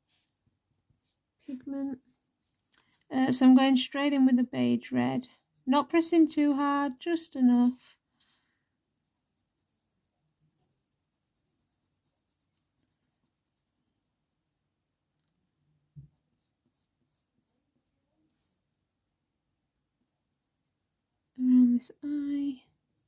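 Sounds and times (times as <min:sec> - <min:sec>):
coloured pencil scratching on paper: 0:03.9 - 0:07.1, 0:08.7 - 0:14.8, 0:16.0 - 0:18.7, 0:19.9 - 0:23.0.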